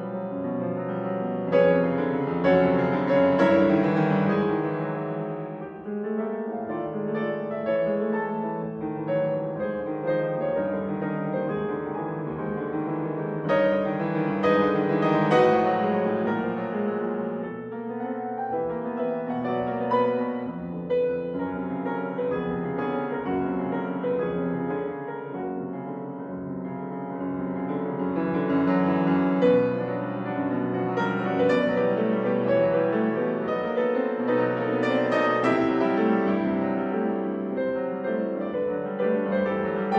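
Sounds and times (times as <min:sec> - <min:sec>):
gentle piano music: 0:00.0 - 0:39.9.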